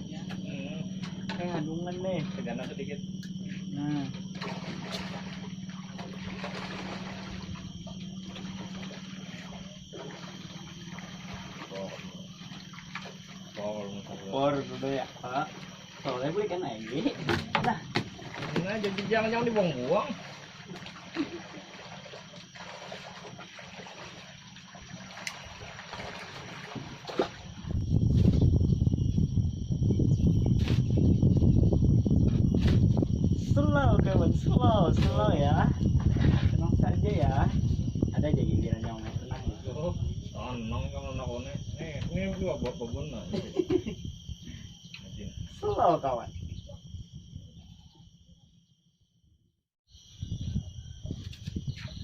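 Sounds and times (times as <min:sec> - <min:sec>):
low motor hum: 0:00.0 - 0:43.0
water splashing and churning: 0:04.0 - 0:27.9.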